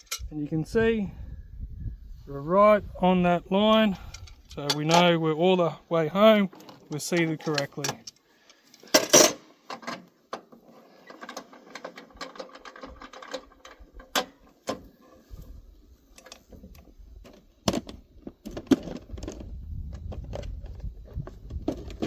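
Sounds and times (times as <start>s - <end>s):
metal tools clicking and clinking: 0.0s - 0.3s, 6.9s - 8.2s.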